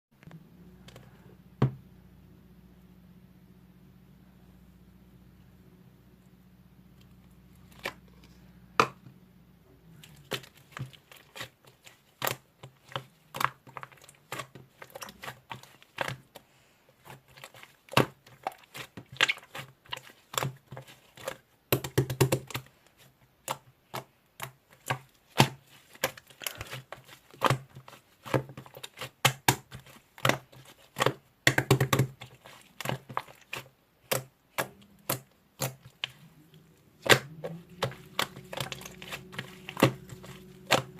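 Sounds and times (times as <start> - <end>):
slime squished by hand: 10.0 - 40.9.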